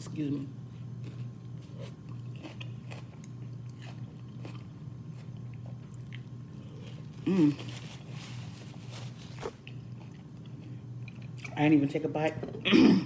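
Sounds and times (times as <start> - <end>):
steady low hum: 0.0 - 13.0
person chewing food: 0.8 - 11.6
person humming mm: 7.2 - 7.7.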